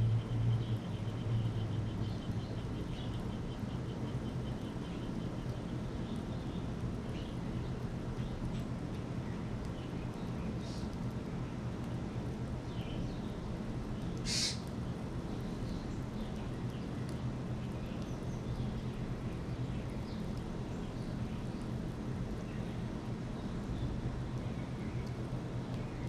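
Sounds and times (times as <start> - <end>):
small birds chirping: 0.0 - 26.0
harsh bird call: 14.2 - 14.6.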